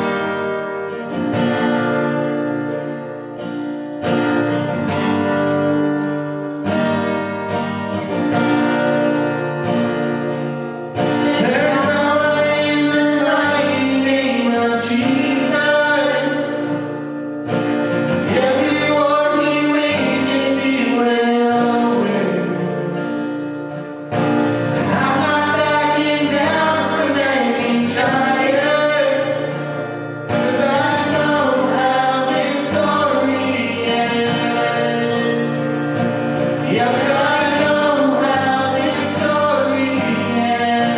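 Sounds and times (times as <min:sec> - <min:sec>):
strummed acoustic guitar: 0:00.0 - 0:40.9
person singing: 0:11.0 - 0:17.3, 0:17.9 - 0:23.4, 0:24.6 - 0:40.9.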